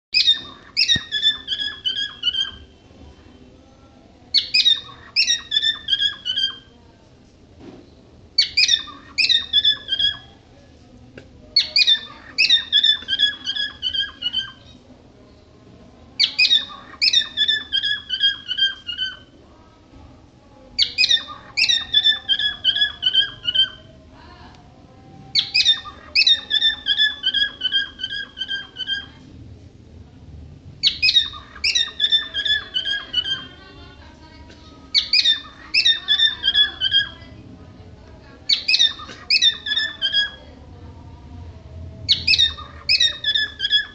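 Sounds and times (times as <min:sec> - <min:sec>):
bird chirping in bursts: 0:00.1 - 0:02.7, 0:04.3 - 0:06.7, 0:08.4 - 0:10.4, 0:11.6 - 0:14.8, 0:16.2 - 0:19.3, 0:20.8 - 0:23.8, 0:25.4 - 0:29.2, 0:30.8 - 0:33.6, 0:38.5 - 0:40.4, 0:42.1 - 0:43.9.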